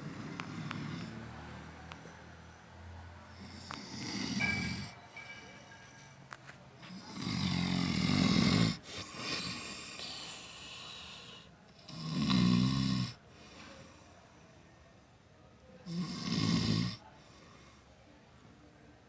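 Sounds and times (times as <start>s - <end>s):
man snoring: 3.3s - 4.9s, 6.9s - 13.2s, 15.9s - 17.0s
soft breath: 13.2s - 15.1s, 17.0s - 18.2s.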